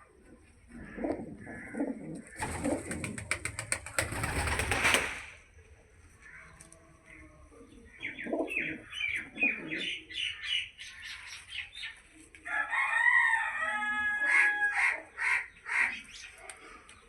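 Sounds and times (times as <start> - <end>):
birds chirping: 0.0 - 12.2.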